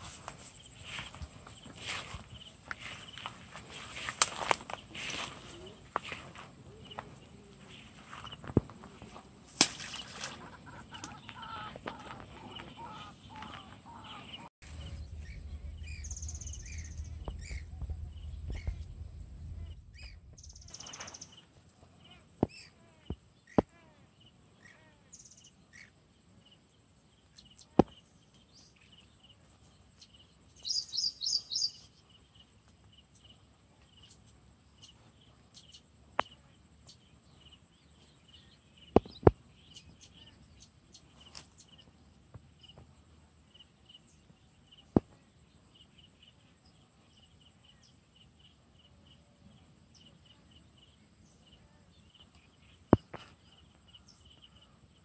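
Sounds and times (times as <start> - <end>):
insects buzzing: 0.0 - 28.0
cricket chirping: 0.0 - 55.0.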